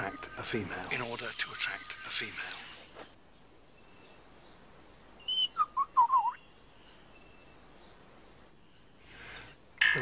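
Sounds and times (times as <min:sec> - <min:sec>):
faint bird chirps: 0:00.0 - 0:10.0
lyrebird whistling song: 0:05.1 - 0:07.7.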